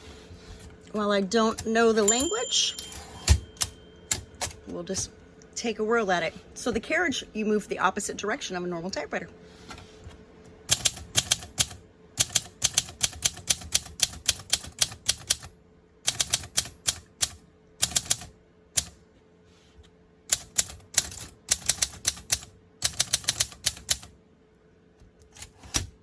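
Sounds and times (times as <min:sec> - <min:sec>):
manual typewriter keys clacking: 0:10.7 - 0:15.5, 0:16.1 - 0:19.0, 0:20.3 - 0:24.1, 0:25.2 - 0:26.0.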